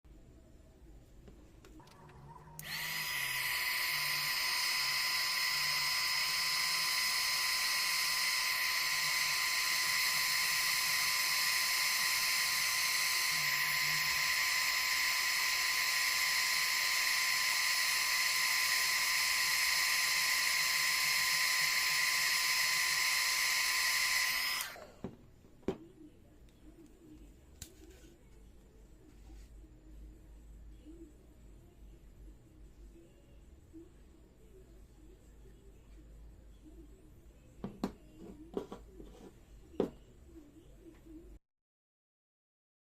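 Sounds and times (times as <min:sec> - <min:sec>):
hot air gun fan whine: 0:02.6 - 0:25.2.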